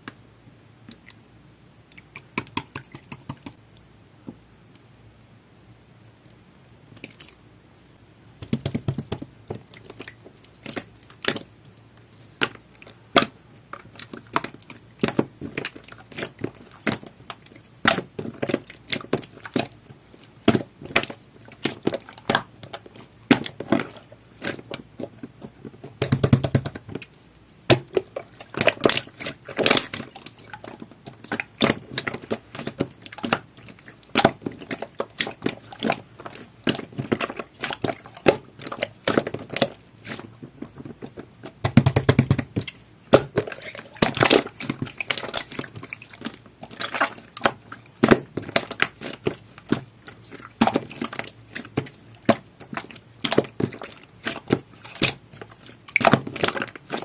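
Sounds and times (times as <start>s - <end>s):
slime squishing with pops: 1.9s - 3.6s, 8.4s - 57.0s.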